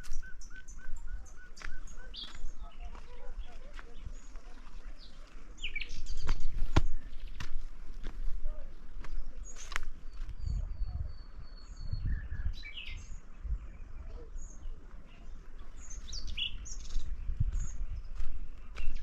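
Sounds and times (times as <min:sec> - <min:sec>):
small birds chirping: 0:00.0 - 0:19.0.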